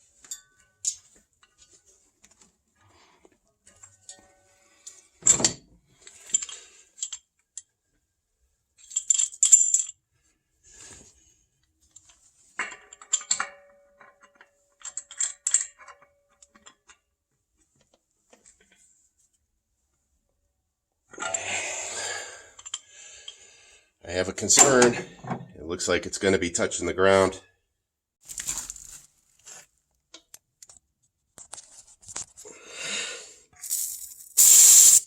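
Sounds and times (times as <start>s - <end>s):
metal pipe fittings clinking: 12.0s - 17.0s, 33.6s - 35.0s.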